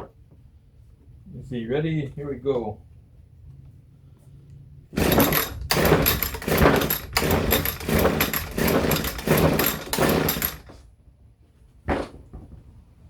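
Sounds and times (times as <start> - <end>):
engine cranking without firing: 4.9 - 10.8
recoil starter cord yanked: 5.0 - 10.8.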